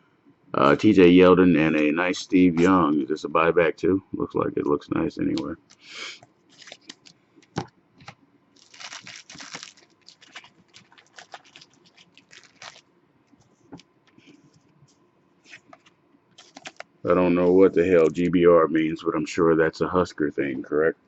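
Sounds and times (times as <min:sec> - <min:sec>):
cards scraping and rustling: 0:06.5 - 0:07.1, 0:08.0 - 0:12.8, 0:15.4 - 0:18.4.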